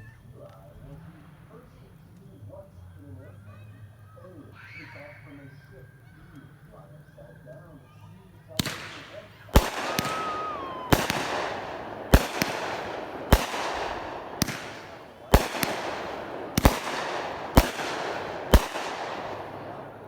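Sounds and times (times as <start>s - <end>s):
firework shots with hiss: 8.5s - 20.0s
small firework cracks: 8.5s - 20.0s
firework whistling tone: 8.6s - 20.0s.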